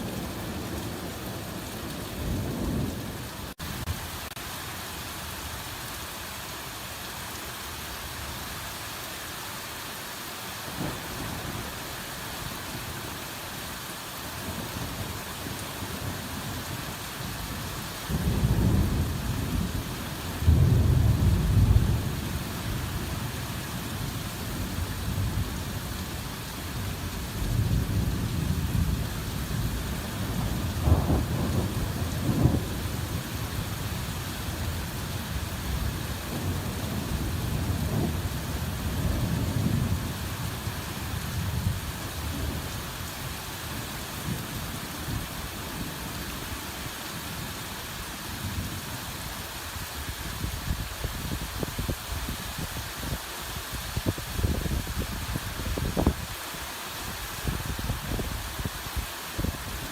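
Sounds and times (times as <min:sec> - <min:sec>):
hard rain falling: 0:00.0 - 0:59.9
thunder rumbling: 0:18.1 - 0:22.6, 0:27.3 - 0:40.6.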